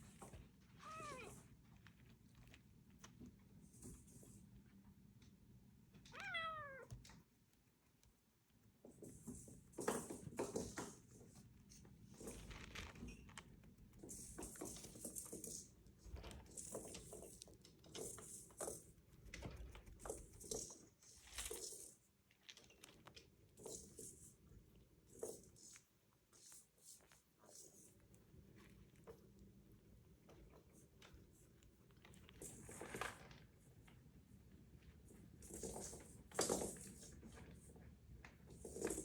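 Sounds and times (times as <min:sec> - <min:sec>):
cat meowing: 0:00.8 - 0:01.4, 0:06.1 - 0:07.0.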